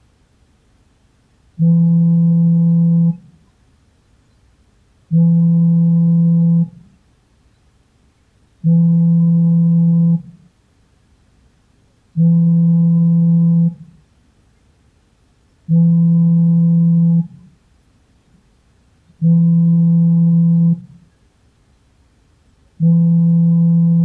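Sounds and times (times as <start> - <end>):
smartphone vibrating: 1.6 - 3.2, 5.1 - 6.8, 8.6 - 10.4, 12.2 - 13.8, 15.7 - 17.4, 19.2 - 20.9, 22.8 - 24.0.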